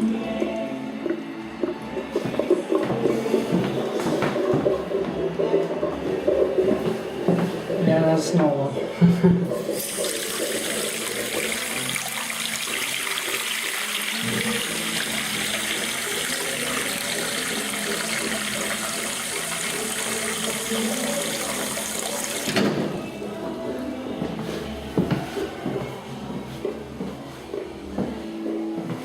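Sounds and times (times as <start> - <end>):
toilet cistern refilling: 9.4 - 23.1
fill valve shutting off: 9.5 - 23.1.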